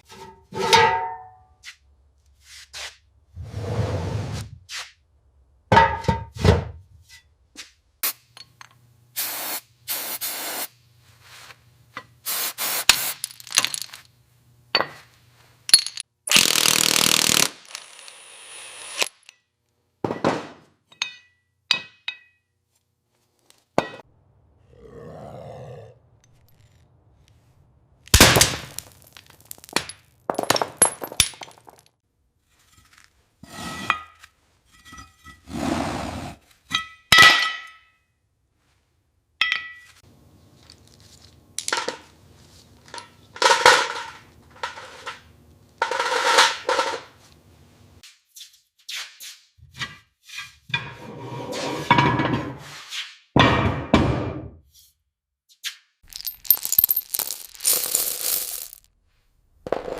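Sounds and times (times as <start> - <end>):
hand tools scraping and clinking: 0.0 - 1.7, 26.2 - 27.5, 32.5 - 35.5, 40.6 - 47.4, 56.1 - 58.9.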